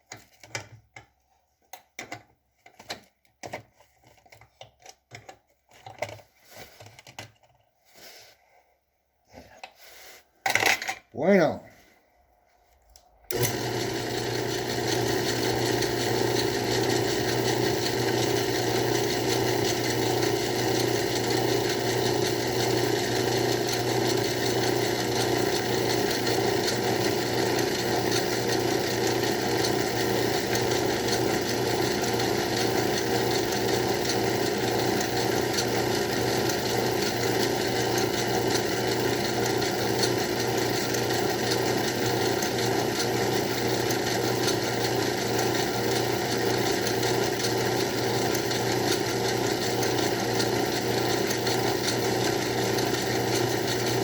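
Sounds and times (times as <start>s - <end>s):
lathe whirring: 13.3s - 54.0s.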